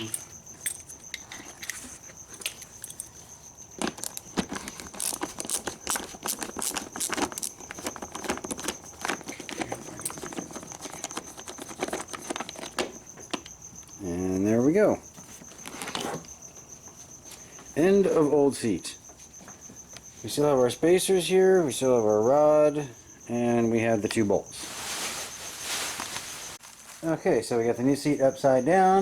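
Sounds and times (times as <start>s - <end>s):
hand tools clicking on bolts: 3.8s - 13.6s.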